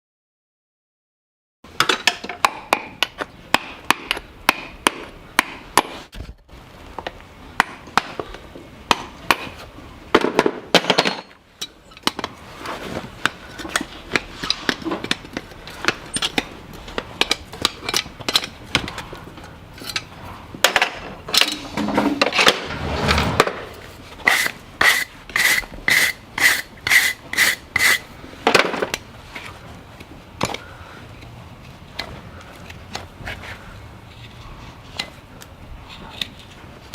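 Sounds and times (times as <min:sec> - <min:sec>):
hand tools scraping: 0:21.3 - 0:28.1.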